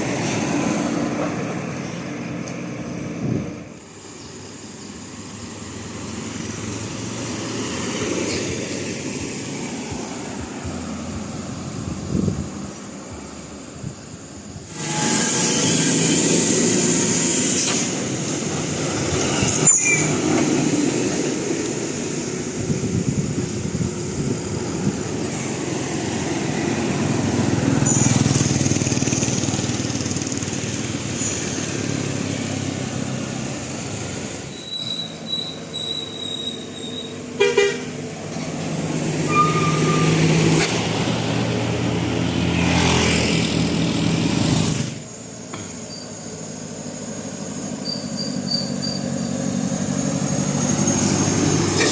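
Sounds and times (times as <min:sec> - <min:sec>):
traffic passing on a road: 0:00.0 - 0:51.9
short horn toot: 0:14.7 - 0:16.4, 0:39.2 - 0:40.2.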